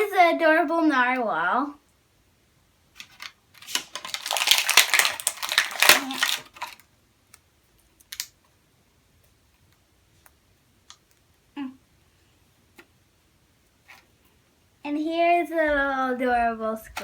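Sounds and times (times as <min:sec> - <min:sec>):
plastic packaging crackling: 0:03.0 - 0:06.9.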